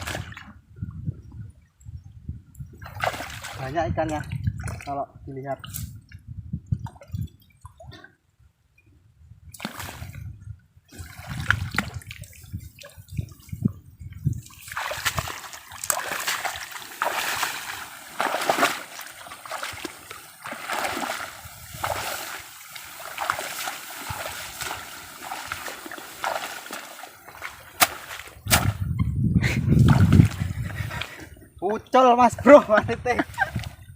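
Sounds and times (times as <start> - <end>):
water splashing in a stream: 0.0 - 0.6, 2.8 - 5.0, 9.6 - 10.3, 10.9 - 28.9, 29.8 - 31.2.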